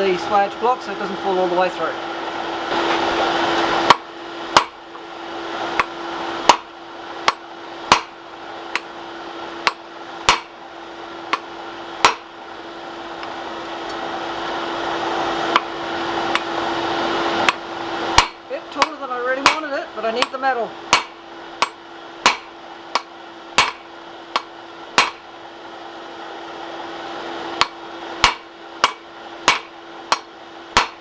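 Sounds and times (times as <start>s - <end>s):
steady hum: 0.0s - 31.0s
hammer blows on hot steel: 15.4s - 25.3s.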